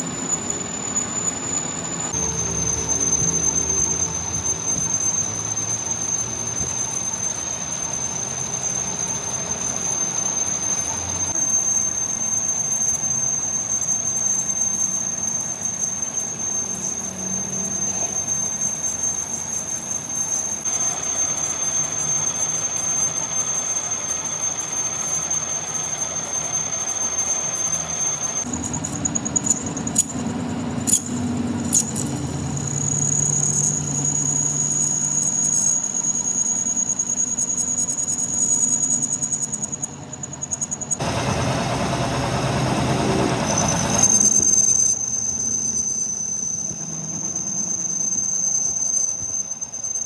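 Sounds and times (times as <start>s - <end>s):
machinery high-pitched squeal: 0.0s - 50.0s
steady machine hiss: 41.0s - 45.3s.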